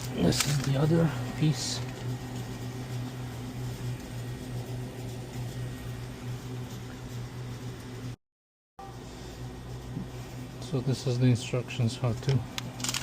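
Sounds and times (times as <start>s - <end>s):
refrigeration unit humming: 0.0s - 8.2s, 8.8s - 13.0s.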